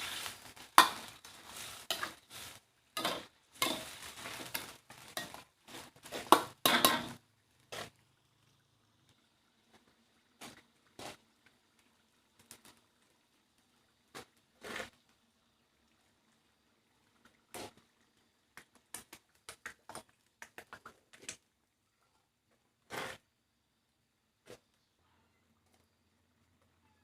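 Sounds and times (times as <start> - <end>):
kitchen things clicking and tapping: 0.2 - 7.2, 18.5 - 21.5.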